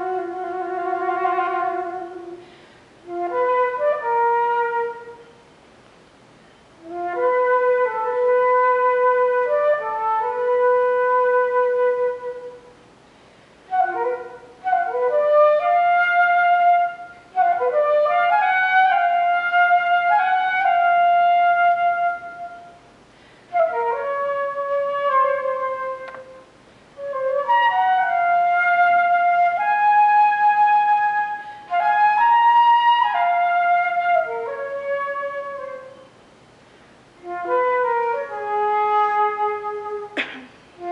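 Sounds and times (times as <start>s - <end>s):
solo flute melody: 0.0s - 5.5s, 6.7s - 12.8s, 13.7s - 22.9s, 23.5s - 36.2s, 37.2s - 40.2s
flute player breathing: 2.3s - 3.1s, 13.0s - 13.8s, 23.0s - 23.7s, 31.3s - 31.9s, 36.6s - 37.2s.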